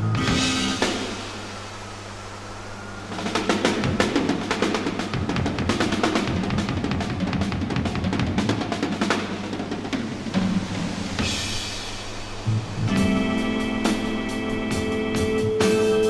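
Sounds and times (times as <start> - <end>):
busy rock drumming: 0.0 - 1.7, 2.7 - 16.0
held low note: 9.9 - 16.0.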